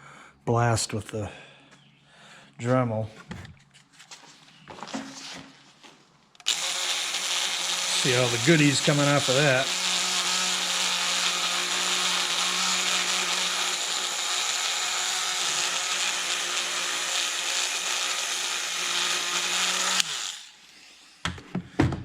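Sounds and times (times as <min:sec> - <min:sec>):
rotary tool running at high speed: 0:06.4 - 0:21.0.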